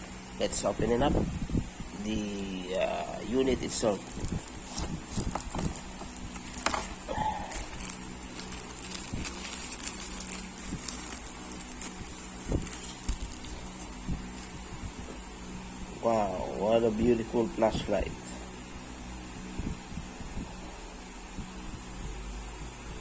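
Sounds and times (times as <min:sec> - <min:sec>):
faint steady hum: 0:00.0 - 0:23.0
cardboard packaging rustling: 0:02.7 - 0:15.2.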